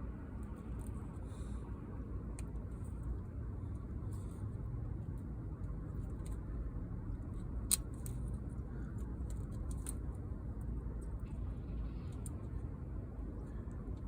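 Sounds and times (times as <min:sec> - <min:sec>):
steady low hum: 0:00.0 - 0:14.0
light clicks and scrapes: 0:00.4 - 0:10.3, 0:11.0 - 0:12.8.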